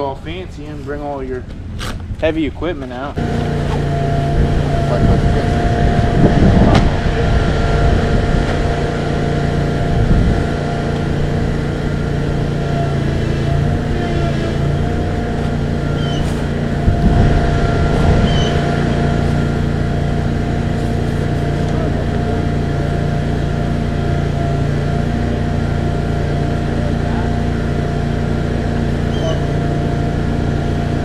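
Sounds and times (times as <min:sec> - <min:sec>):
motor humming: 0:03.2 - 0:31.0.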